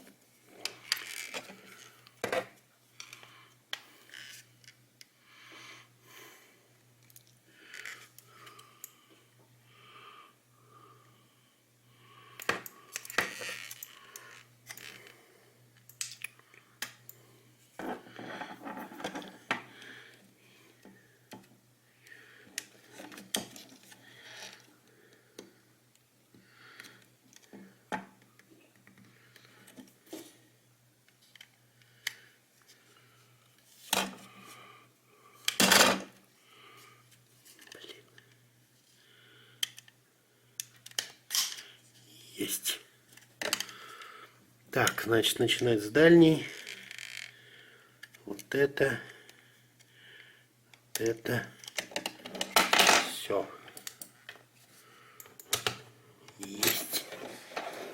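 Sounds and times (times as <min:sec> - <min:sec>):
faint steady hum: 0:00.0 - 0:57.9
plastic parts clicking and scraping: 0:40.6 - 0:41.7, 0:50.9 - 0:54.4.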